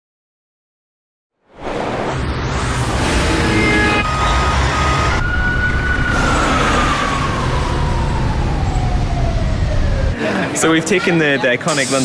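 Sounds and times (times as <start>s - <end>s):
siren tone gliding down: 2.0s - 10.2s
street traffic: 2.4s - 12.0s.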